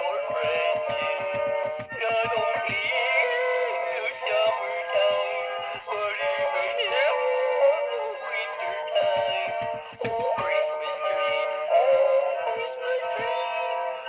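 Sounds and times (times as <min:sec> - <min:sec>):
backing music from small speaker: 0:00.0 - 0:14.0
toy singing in synthesized voice: 0:00.0 - 0:14.0.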